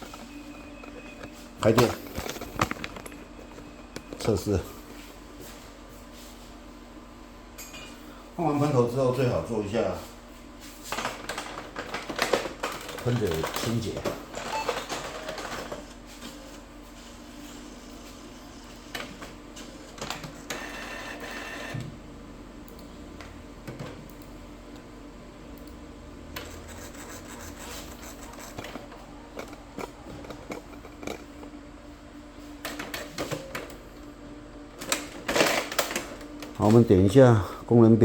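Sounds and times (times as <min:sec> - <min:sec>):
printer motor whirs: 0:13.1 - 0:24.8, 0:25.6 - 0:31.6
steady low hum: 0:15.8 - 0:38.0.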